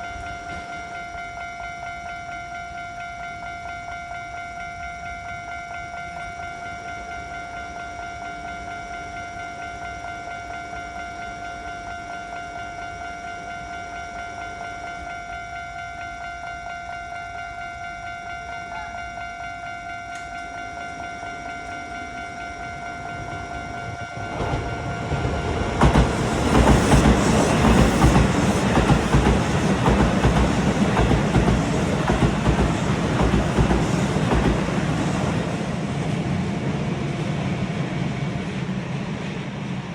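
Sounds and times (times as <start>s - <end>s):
train wheels rattling on rail: 18.7s - 39.9s.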